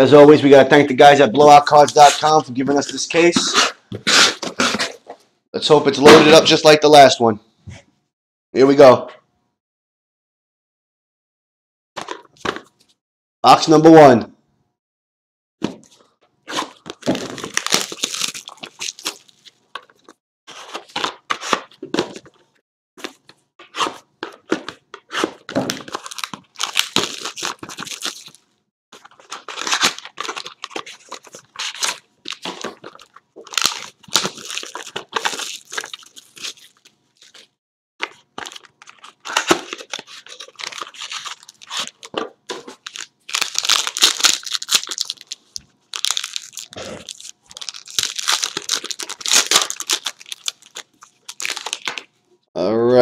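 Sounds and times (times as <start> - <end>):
packaging tearing and crinkling: 3.5 - 5.0, 16.5 - 22.2, 25.1 - 28.4, 29.0 - 52.1.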